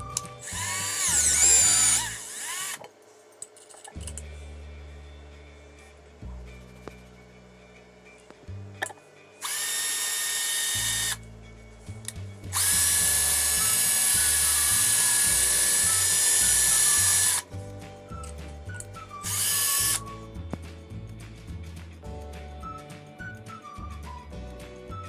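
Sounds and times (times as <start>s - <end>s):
power tool motor whining: 0.4s - 2.8s, 9.4s - 11.2s, 12.5s - 17.4s, 19.3s - 20.0s
background music with bass line: 4.0s - 25.0s.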